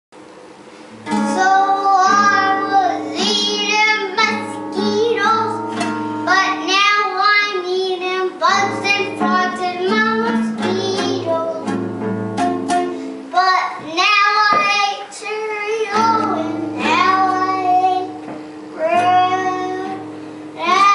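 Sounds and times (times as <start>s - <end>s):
child singing: 1.1s - 11.8s, 13.3s - 20.9s
plucked-string accompaniment: 8.9s - 13.4s.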